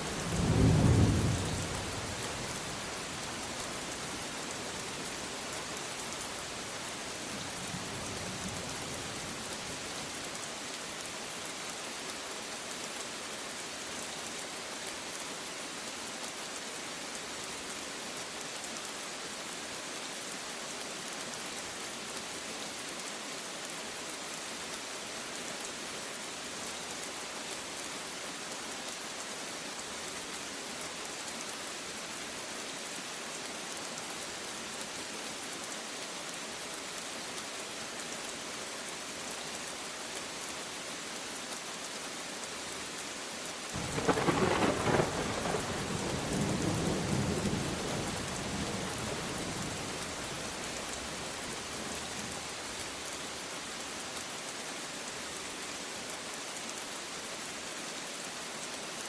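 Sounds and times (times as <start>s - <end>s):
steady rain falling: 0.0s - 59.0s
thunder rumble: 43.8s - 50.2s.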